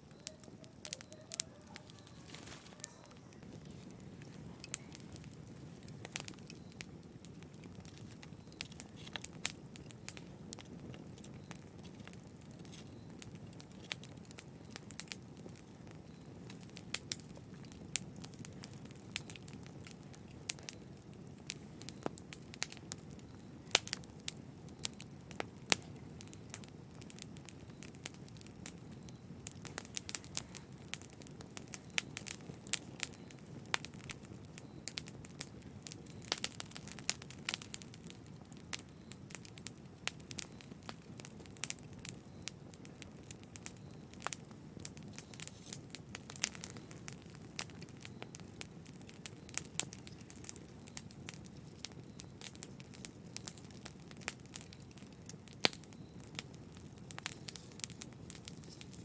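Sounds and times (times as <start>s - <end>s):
low rumble of flames: 0.0s - 59.0s
wood fire pops and snaps: 0.0s - 59.0s.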